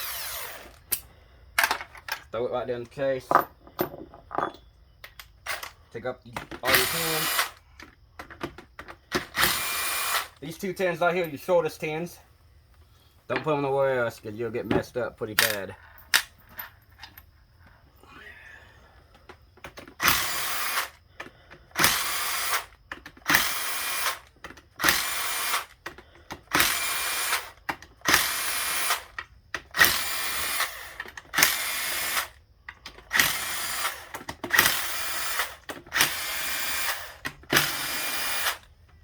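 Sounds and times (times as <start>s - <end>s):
cordless power tool spinning bolts: 0.0s - 2.0s, 5.3s - 5.8s, 6.5s - 10.4s, 19.6s - 39.0s.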